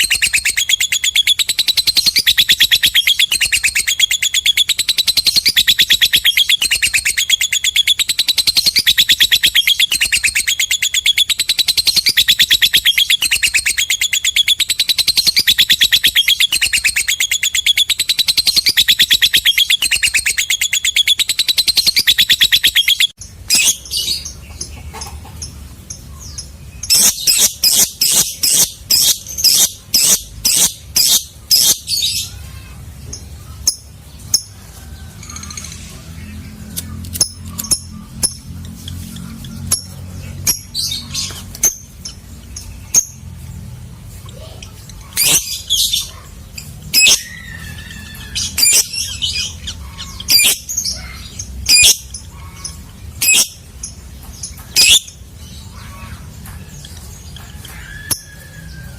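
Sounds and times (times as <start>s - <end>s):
sharp bird chirps: 0.0s - 25.2s, 25.9s - 32.7s, 35.2s - 43.2s, 44.3s - 58.9s
lovebird chattering trill: 0.0s - 32.8s, 44.2s - 58.4s.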